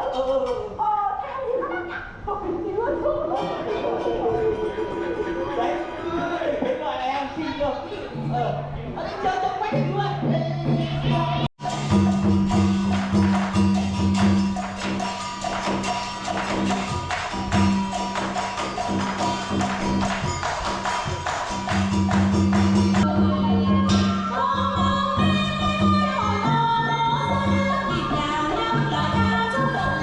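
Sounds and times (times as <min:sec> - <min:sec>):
music with percussive beat: 0:10.6 - 0:30.0.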